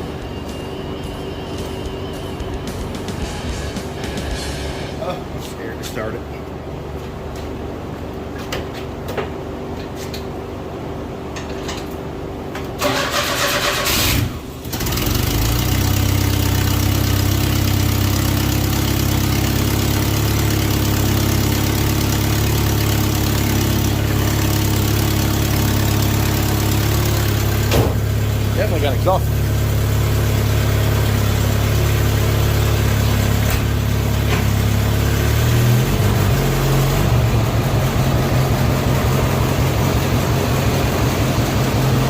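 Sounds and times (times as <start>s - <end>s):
starter cranking engine: 12.8s - 15.9s
pickup engine idling: 15.0s - 35.0s.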